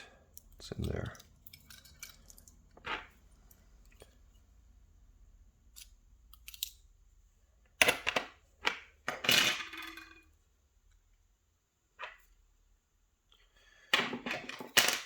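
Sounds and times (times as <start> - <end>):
metal lock parts clicking: 0.3 - 3.1, 5.7 - 6.8
pins jingling clatter: 0.9 - 3.6.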